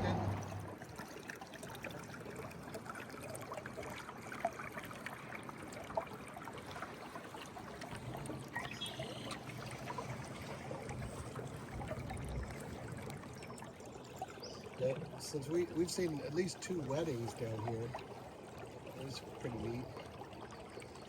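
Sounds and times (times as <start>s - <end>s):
water trickling and lapping: 0.0s - 21.0s
small splashes and ticks: 0.5s - 21.0s.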